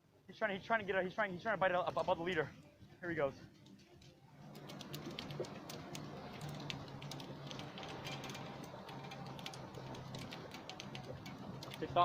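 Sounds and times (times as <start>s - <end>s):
boat engine hum: 4.2s - 12.0s.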